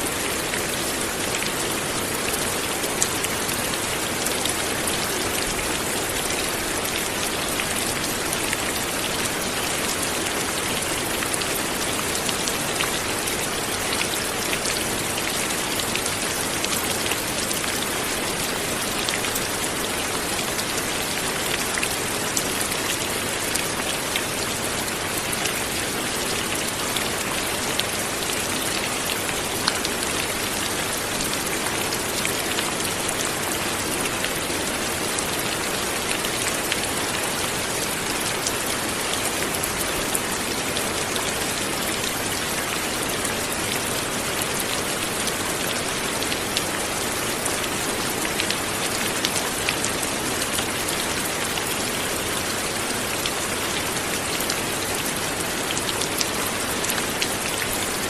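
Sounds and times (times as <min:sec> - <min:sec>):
light rain falling: 0:00.0 - 0:58.0.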